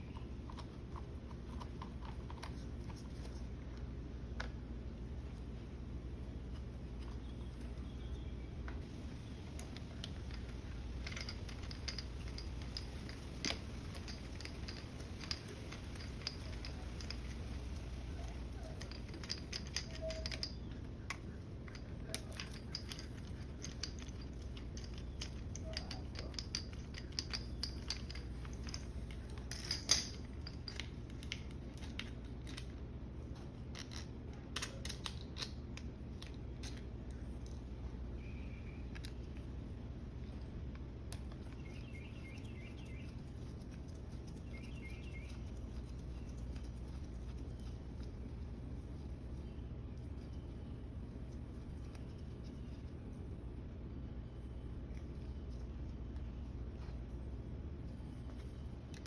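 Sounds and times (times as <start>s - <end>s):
steady low hum: 0.0s - 59.0s
hand tools clicking and tapping: 9.6s - 32.7s.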